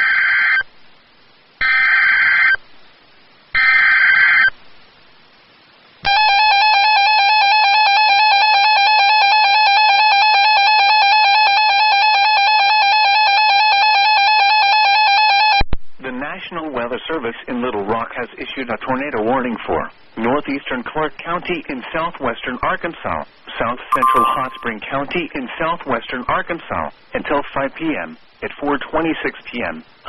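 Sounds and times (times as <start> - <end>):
data tone bursts: 23.9 - 24.8
steady two-tone attention signal: 23.9 - 24.8.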